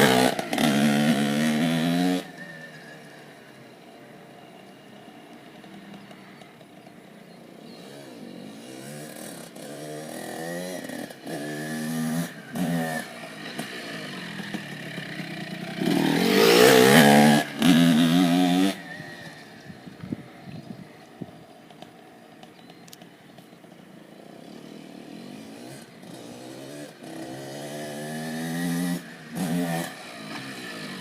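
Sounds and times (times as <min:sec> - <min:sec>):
dirt bike engine revving: 0:00.0 - 0:03.1, 0:07.6 - 0:21.0, 0:24.2 - 0:31.0.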